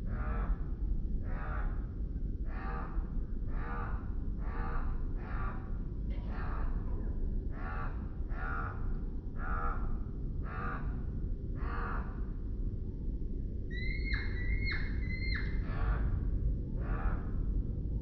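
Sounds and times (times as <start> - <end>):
low rumble: 0.0 - 18.0
crow cawing: 2.5 - 5.7, 7.5 - 11.0, 11.6 - 12.2, 13.7 - 16.1, 16.8 - 17.4.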